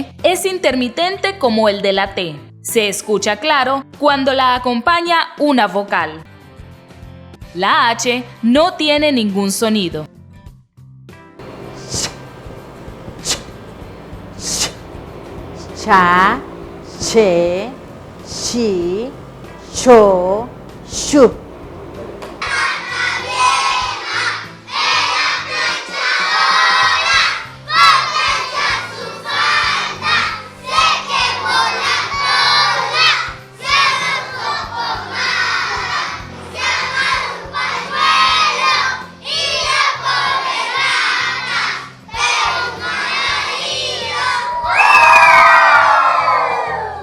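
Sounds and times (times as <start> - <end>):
loud drawn-out shout: 43.8 - 47.0.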